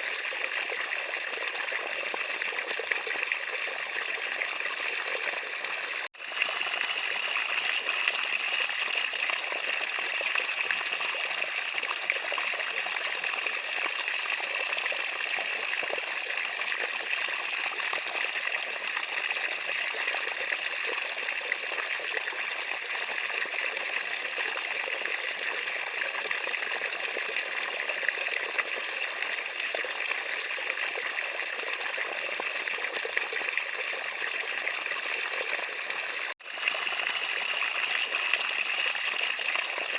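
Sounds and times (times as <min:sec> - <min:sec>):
running water trickling: 0:28.3 - 0:39.9.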